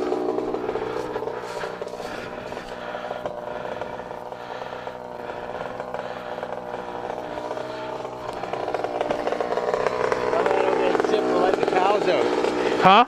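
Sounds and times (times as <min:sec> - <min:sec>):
dirt bike engine running: 0:00.0 - 0:13.0.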